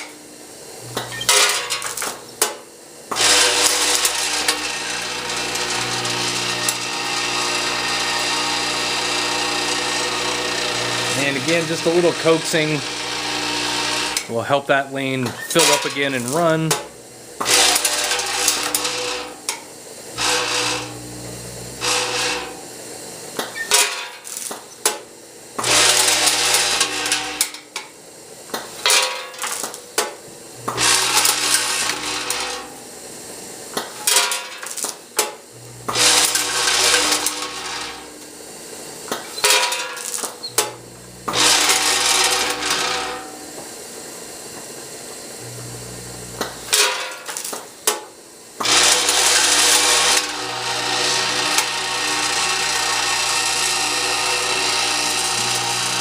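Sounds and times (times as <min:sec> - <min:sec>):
vibratory feeder humming: 0:00.5 - 0:23.2, 0:25.2 - 0:27.6, 0:30.3 - 0:34.1, 0:35.5 - 0:47.8, 0:48.6 - 0:56.0.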